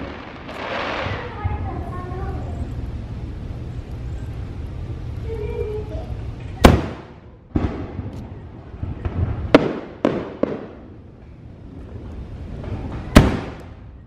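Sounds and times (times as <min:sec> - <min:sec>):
fireworks bursting with rumble: 0:00.0 - 0:14.0.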